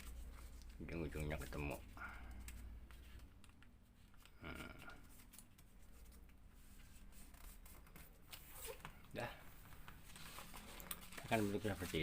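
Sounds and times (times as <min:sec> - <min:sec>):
paper being folded: 0:10.0 - 0:12.0.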